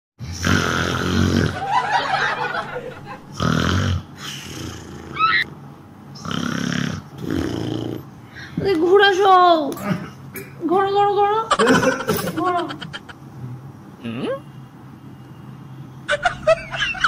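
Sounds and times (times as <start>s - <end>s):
man snoring loudly: 0.2s - 1.6s, 3.4s - 5.2s, 6.2s - 8.0s.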